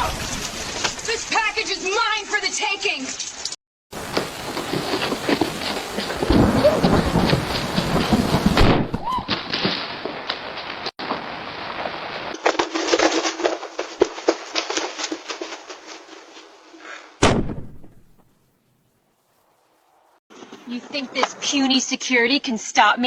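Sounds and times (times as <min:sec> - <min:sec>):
rapid crackling pops: 0:04.0 - 0:11.2
sharp bang: 0:17.2 - 0:18.2.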